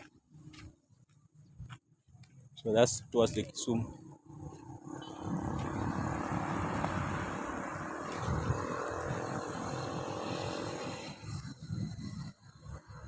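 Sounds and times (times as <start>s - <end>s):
wind gusting on microphone: 3.0s - 13.0s
vehicle passing on road: 3.9s - 13.0s.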